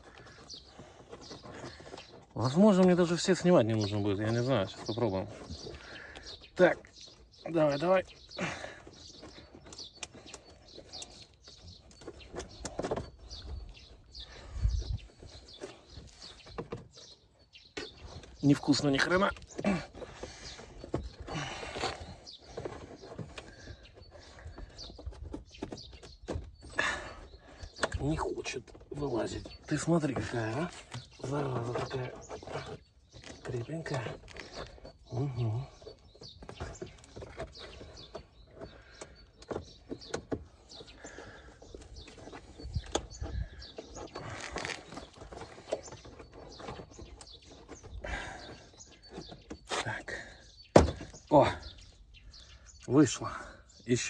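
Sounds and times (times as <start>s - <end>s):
plastic clicks and scraping: 35.8s - 49.7s.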